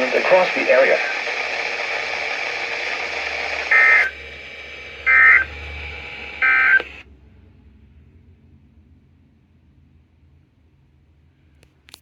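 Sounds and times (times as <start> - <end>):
broadcast hiss: 0.0 - 7.0
screeching digital tones: 0.0 - 7.0.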